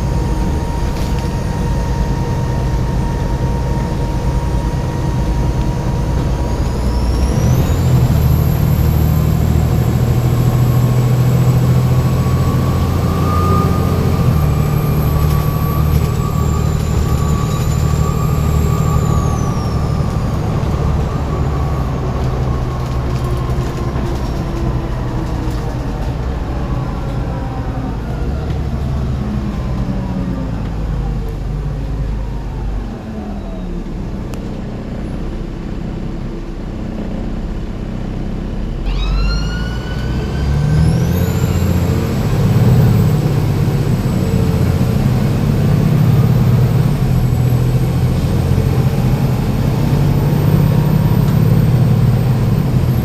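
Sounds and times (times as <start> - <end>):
high turbo whistle: 0.0 - 24.9, 38.8 - 53.0
diesel bus engine under load: 0.0 - 53.0.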